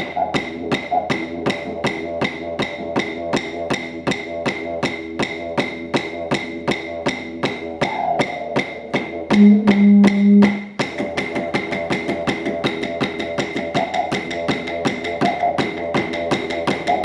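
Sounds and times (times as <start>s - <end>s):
didgeridoo drone: 0.0s - 17.0s.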